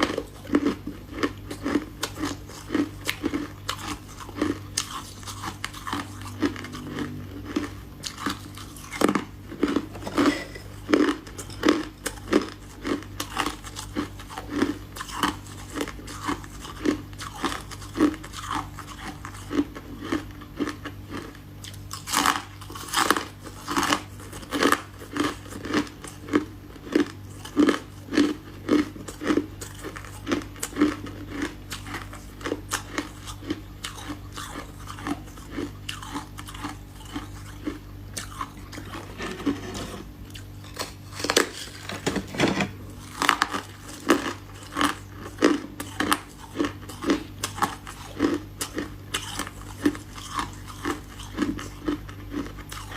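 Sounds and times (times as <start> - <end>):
faint low hum: 0.0 - 52.9
person crunching ice: 0.1 - 16.4, 38.2 - 42.4.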